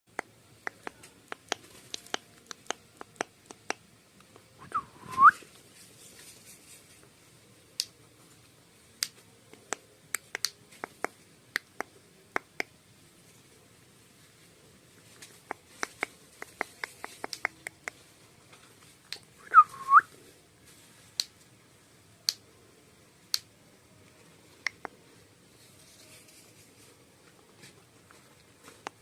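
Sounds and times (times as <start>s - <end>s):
sharp clicks and taps: 0.1s - 4.5s, 9.0s - 12.7s, 15.2s - 18.0s, 24.6s - 25.0s.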